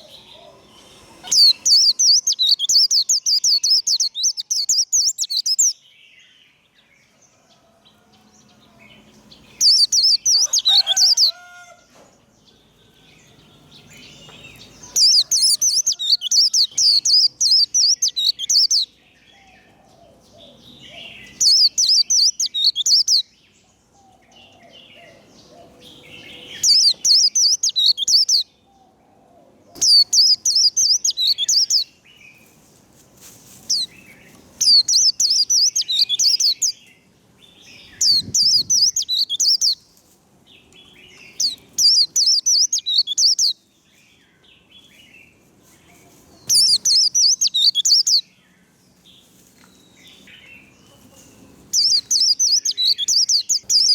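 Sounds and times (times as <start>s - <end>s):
bird singing high trills: 0.0s - 5.8s, 9.2s - 11.6s, 12.6s - 19.0s, 21.1s - 23.4s, 25.9s - 28.6s, 29.7s - 31.9s, 34.6s - 36.8s, 37.7s - 39.8s, 41.2s - 43.6s, 46.4s - 48.3s, 51.7s - 53.9s
soft bird twittering: 0.0s - 6.1s, 9.2s - 11.5s, 13.5s - 19.0s, 21.0s - 23.3s, 26.1s - 28.5s, 29.7s - 31.9s, 33.6s - 37.0s, 37.7s - 39.8s, 40.9s - 43.6s, 46.1s - 48.3s, 49.6s - 53.9s.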